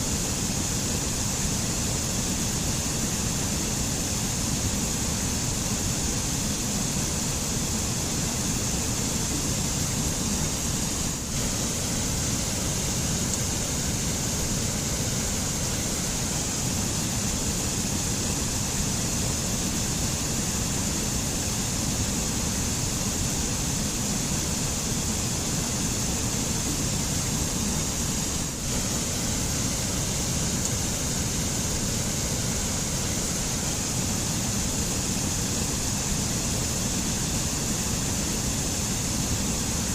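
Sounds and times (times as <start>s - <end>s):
stream rushing over rocks: 9.1s - 21.6s, 22.4s - 39.9s.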